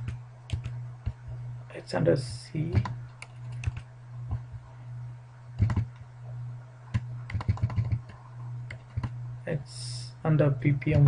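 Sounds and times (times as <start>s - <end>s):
computer keyboard typing: 0.0s - 1.4s, 2.7s - 4.4s, 5.6s - 6.0s, 6.9s - 9.2s
steady low hum: 0.0s - 11.0s.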